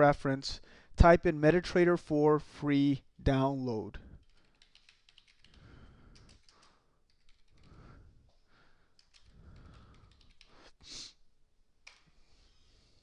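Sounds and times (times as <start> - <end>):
soft breathing: 4.0 - 11.3
keyboard keystrokes and clicks: 4.2 - 7.8, 8.9 - 10.6.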